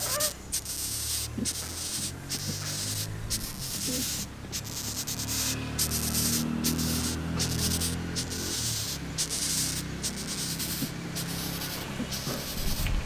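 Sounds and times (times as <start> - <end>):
dry scratching and rustling: 0.0 - 13.0.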